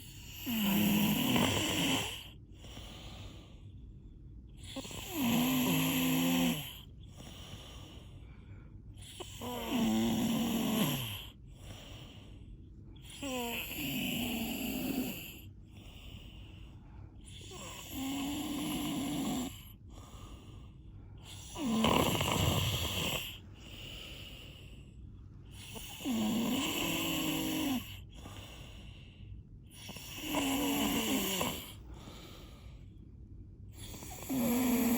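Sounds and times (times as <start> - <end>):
quiet breaths: 0.0 - 34.9
person snoring loudly: 0.1 - 3.1, 4.6 - 7.5, 9.0 - 11.3, 13.0 - 15.4, 17.3 - 20.2, 21.2 - 24.2, 25.5 - 28.4, 29.7 - 32.4, 33.8 - 34.9.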